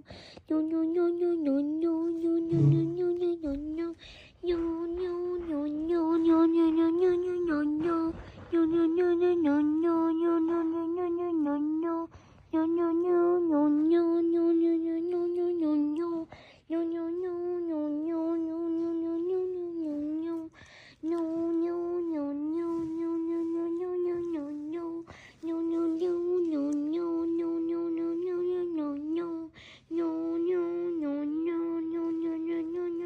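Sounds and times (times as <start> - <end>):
nasal voice-like hum: 2.2 - 3.4.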